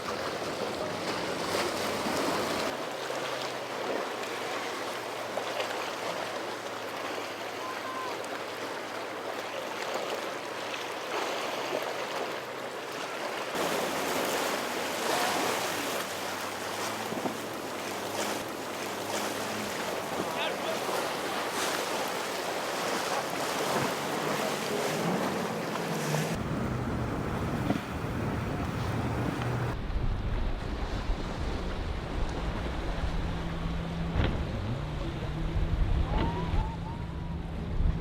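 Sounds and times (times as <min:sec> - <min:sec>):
boat engine running low: 0:00.0 - 0:10.6, 0:11.4 - 0:38.0
rough sea waves churning: 0:00.0 - 0:38.0
wind on microphone: 0:26.1 - 0:38.0.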